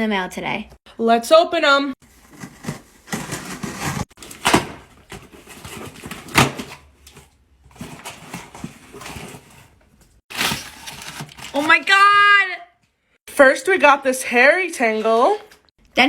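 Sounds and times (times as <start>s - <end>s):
packaging rustling and crinkling: 2.0s - 12.0s.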